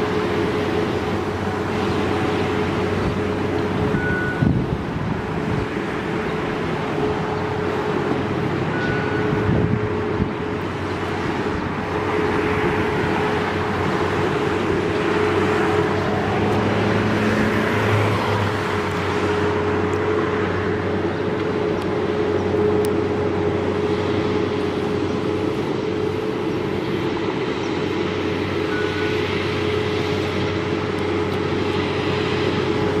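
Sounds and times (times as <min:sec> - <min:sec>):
outdoor warning siren steady tone: 0:03.8 - 0:04.8, 0:08.6 - 0:10.5, 0:12.0 - 0:16.8, 0:28.4 - 0:30.8.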